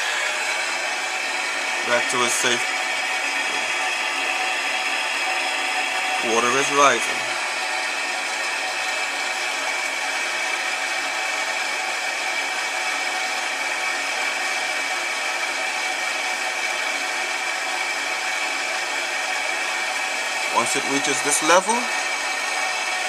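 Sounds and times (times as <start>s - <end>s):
water rushing through valve: 0.0s - 23.0s.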